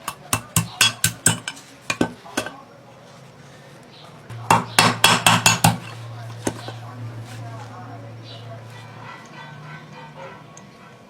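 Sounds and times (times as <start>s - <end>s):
metal parts clinking and tapping: 0.0s - 2.5s
steady low hum: 0.0s - 10.6s.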